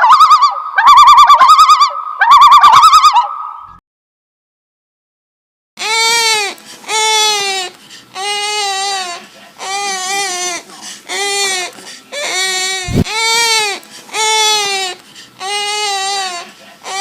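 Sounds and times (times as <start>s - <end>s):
bird calling in wailing cries: 0.0s - 3.8s.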